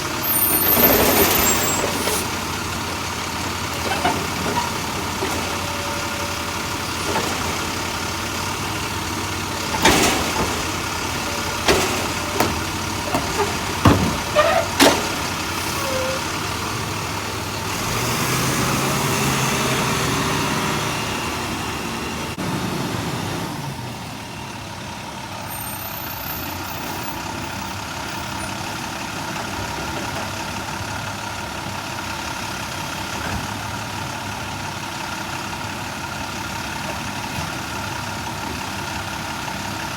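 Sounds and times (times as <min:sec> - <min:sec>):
garbage truck diesel engine: 0:00.0 - 0:39.9
metal clanks and bangs: 0:00.8 - 0:16.8.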